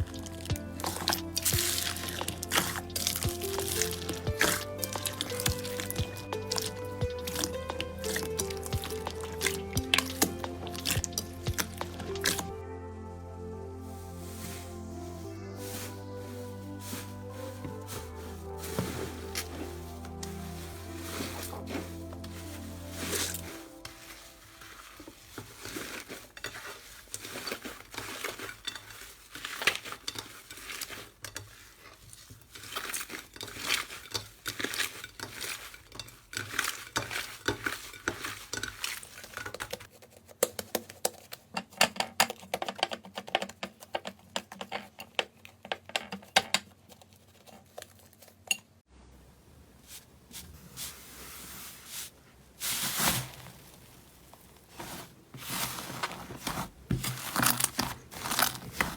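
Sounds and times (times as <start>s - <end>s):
slime squishing and popping: 0.0s - 12.5s.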